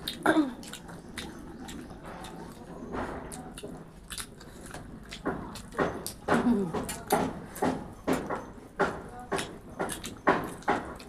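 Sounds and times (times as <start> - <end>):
small mouth clicks: 0.0 - 2.5
chewing and biting: 0.0 - 11.0.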